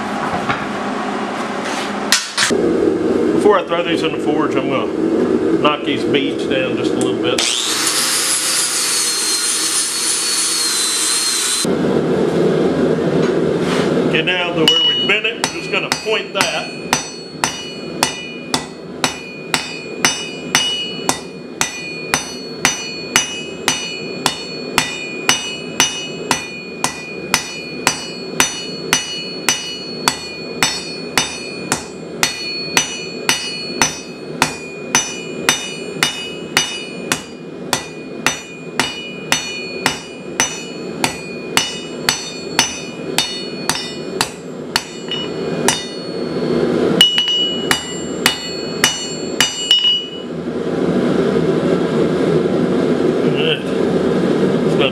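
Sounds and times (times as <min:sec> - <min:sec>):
low rushing noise: 0:02.5 - 0:07.4, 0:11.6 - 0:15.5
hammer ringing on anvil: 0:14.6 - 0:50.3.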